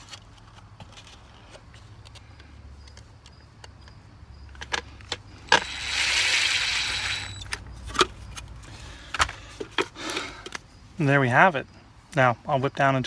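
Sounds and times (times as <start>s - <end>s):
plastic and metal handling clicks: 0.0s - 5.7s, 7.3s - 10.7s.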